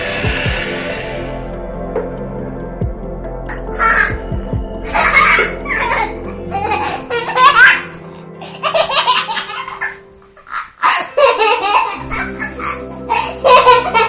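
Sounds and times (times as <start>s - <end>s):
faint background music: 0.0s - 14.0s
young child laughing: 5.0s - 14.0s.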